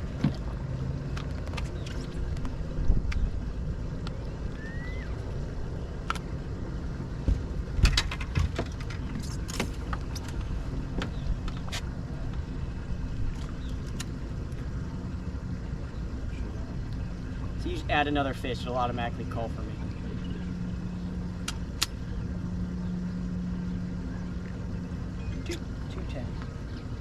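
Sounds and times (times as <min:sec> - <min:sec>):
boat motor rumble: 0:00.0 - 0:27.0
knocks and clacks of gear: 0:00.1 - 0:03.3, 0:07.2 - 0:12.4.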